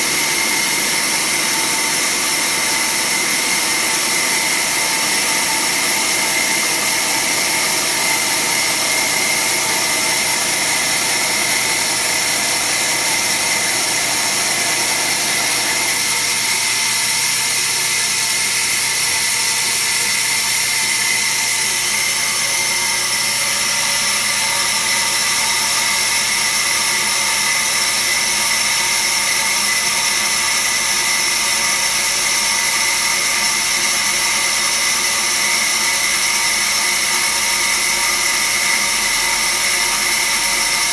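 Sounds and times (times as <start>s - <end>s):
band saw whine: 0.0s - 17.5s.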